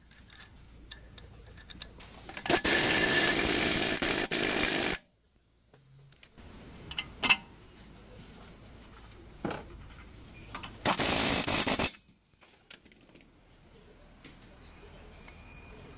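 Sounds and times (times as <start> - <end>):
power tool burst: 2.3 - 5.0, 10.9 - 11.9.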